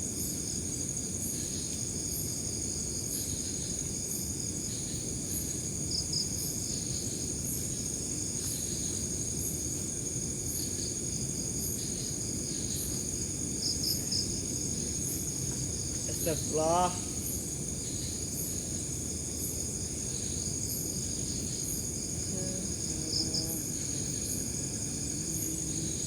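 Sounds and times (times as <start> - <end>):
crickets and insects trilling: 0.0 - 26.0
sharp insect chirps: 20.0 - 26.0.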